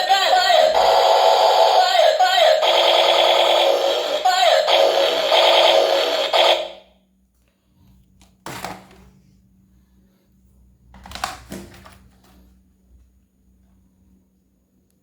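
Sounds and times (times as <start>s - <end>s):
loud electronic tone: 0.0s - 6.8s.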